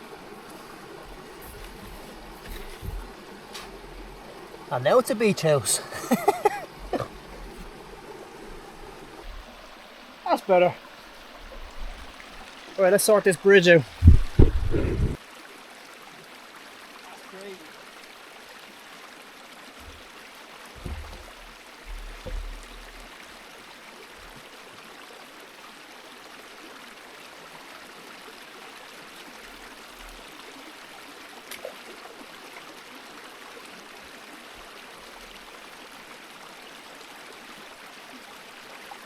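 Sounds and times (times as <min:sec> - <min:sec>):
river flowing: 0:00.0 - 0:39.0
low thumps: 0:00.5 - 0:04.6, 0:13.9 - 0:15.2, 0:20.8 - 0:23.1.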